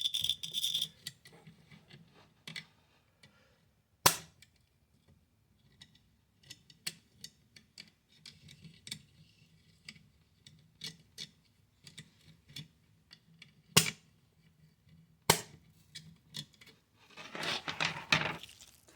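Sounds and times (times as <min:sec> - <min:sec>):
rustling: 0:17.1 - 0:18.9.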